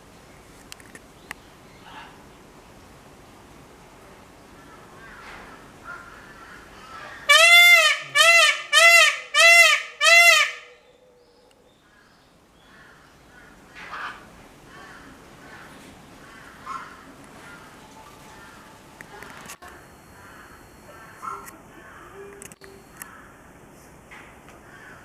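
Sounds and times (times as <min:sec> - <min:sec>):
peafowl wailing calls: 0:05.8 - 0:10.8.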